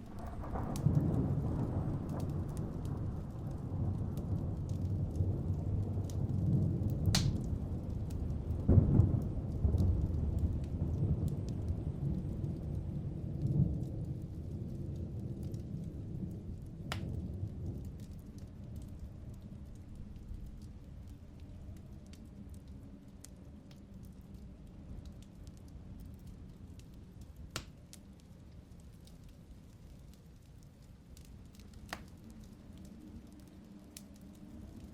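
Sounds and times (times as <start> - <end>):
low rolling thunder: 0.0 - 21.1
rain: 0.0 - 34.9
sharp raindrop ticks: 0.0 - 34.9.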